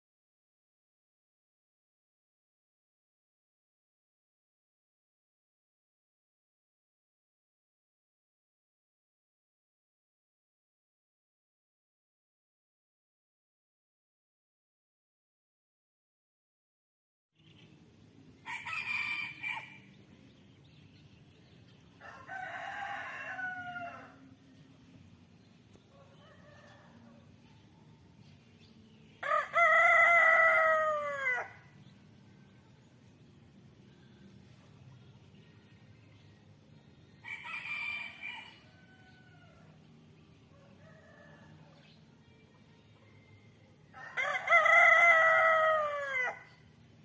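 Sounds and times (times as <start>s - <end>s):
rooster crowing: 18.4s - 19.8s, 22.0s - 24.3s, 25.9s - 27.2s, 29.2s - 31.7s, 37.2s - 39.7s, 43.9s - 46.6s.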